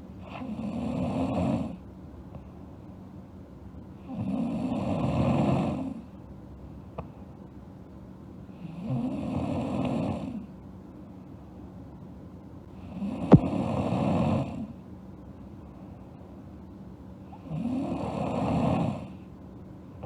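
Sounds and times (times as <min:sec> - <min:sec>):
girl snoring: 0:00.2 - 0:01.8, 0:04.1 - 0:06.0, 0:08.6 - 0:10.5, 0:12.9 - 0:14.7, 0:17.4 - 0:19.2.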